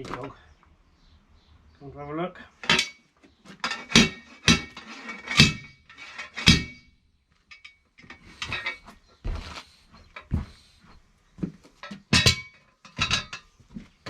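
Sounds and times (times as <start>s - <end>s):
metal tools clanking on wheel: 2.6s - 10.5s, 11.8s - 14.0s.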